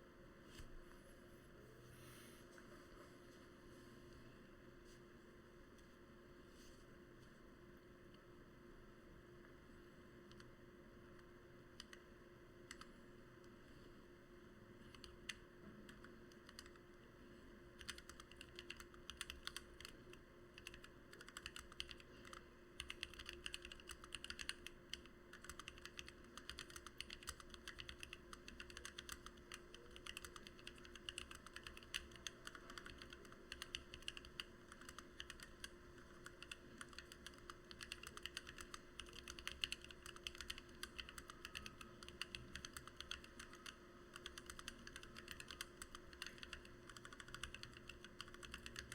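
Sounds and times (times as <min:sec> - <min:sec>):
typing on mechanical keyboard: 0:12.7 - 0:12.9, 0:14.8 - 0:16.8, 0:17.8 - 0:48.9.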